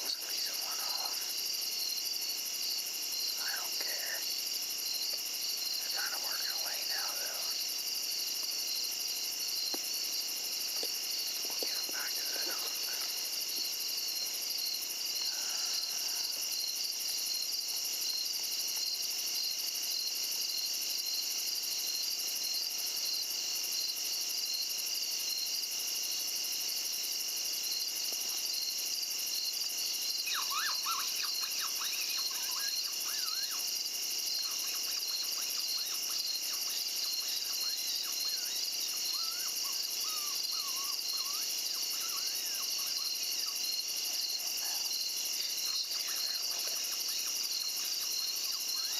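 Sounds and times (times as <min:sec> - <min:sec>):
crickets and insects trilling: 0:00.0 - 0:48.9
quick high wavering calls: 0:30.3 - 0:33.6, 0:39.1 - 0:43.2.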